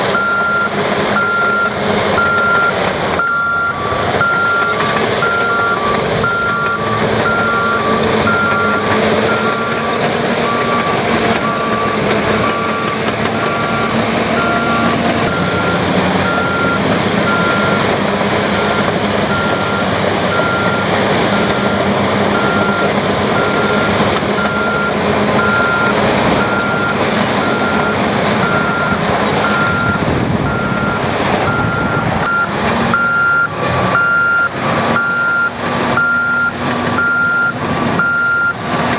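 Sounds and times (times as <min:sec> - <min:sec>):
diesel engines running: 0:00.0 - 0:38.9
backup alarms beeping: 0:00.1 - 0:38.6.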